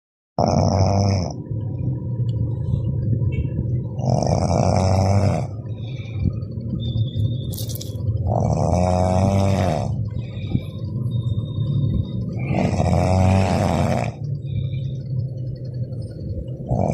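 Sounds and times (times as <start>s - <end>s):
loud rasping snoring: 0.4s - 1.4s, 4.0s - 5.6s, 8.2s - 10.2s, 12.3s - 14.3s, 16.7s - 16.9s
steady low hum: 0.4s - 16.9s.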